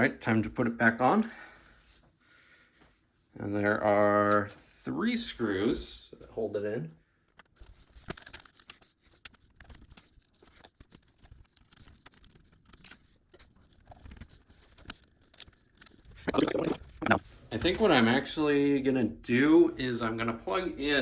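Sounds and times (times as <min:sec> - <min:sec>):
person speaking: 0:16.2 - 0:21.0.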